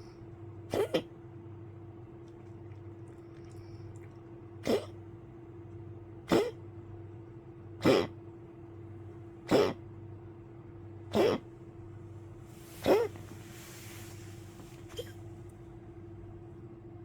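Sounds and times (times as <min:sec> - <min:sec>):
dog coughing: 0:00.7 - 0:01.1, 0:04.6 - 0:05.1, 0:06.2 - 0:06.7, 0:07.8 - 0:08.2, 0:09.4 - 0:09.9, 0:11.1 - 0:11.6, 0:12.7 - 0:13.4, 0:14.8 - 0:15.3.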